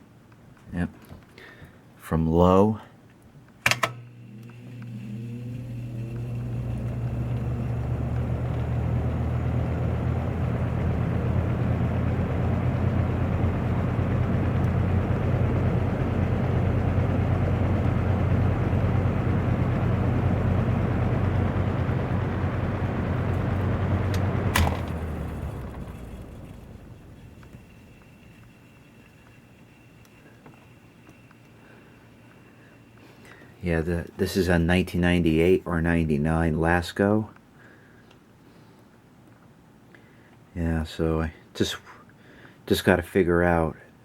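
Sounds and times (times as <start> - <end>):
fan motor hum: 3.4 - 41.5
switch click: 3.6 - 4.6.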